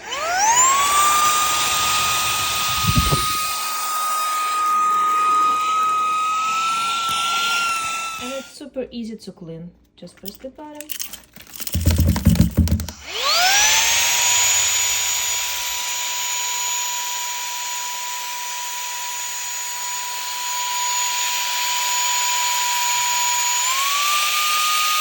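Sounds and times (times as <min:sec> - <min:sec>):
mini vacuum motor whining: 0:00.0 - 0:08.6, 0:11.8 - 0:25.0
handling knocks: 0:11.6 - 0:13.0.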